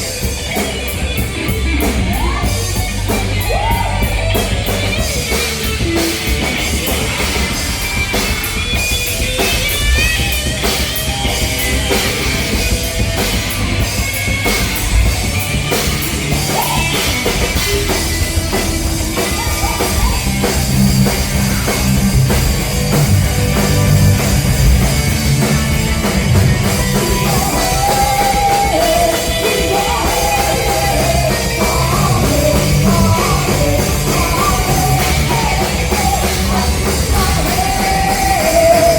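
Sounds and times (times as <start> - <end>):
drum kit: 0.0 - 38.9
rock band playing: 0.0 - 38.9
person singing: 19.2 - 20.6, 26.9 - 38.9.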